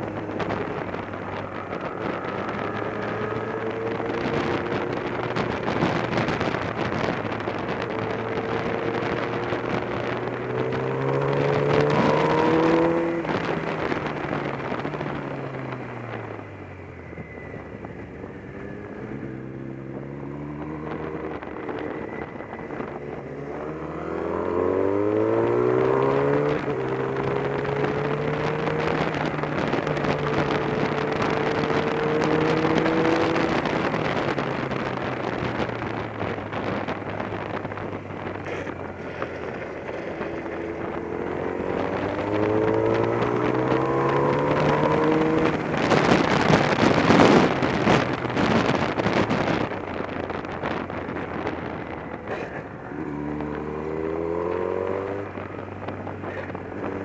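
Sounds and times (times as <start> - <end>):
motorcycle engine revving: 0.0 - 57.0
wind rushing: 0.0 - 57.0.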